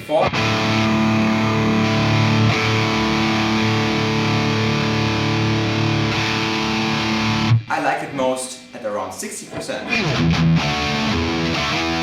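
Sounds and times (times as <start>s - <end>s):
distorted electric guitar chord: 0.3s - 7.7s, 9.9s - 12.0s.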